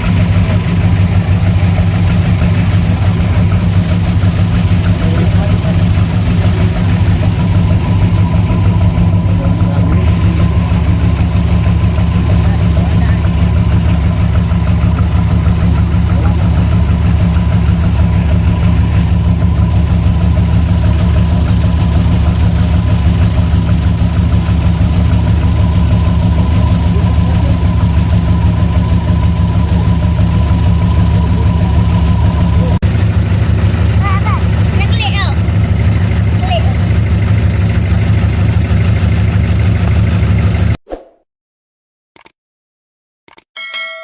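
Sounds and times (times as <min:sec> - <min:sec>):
high engine whine: 0:00.0 - 0:40.6
diesel engine running loudly: 0:00.0 - 0:40.8.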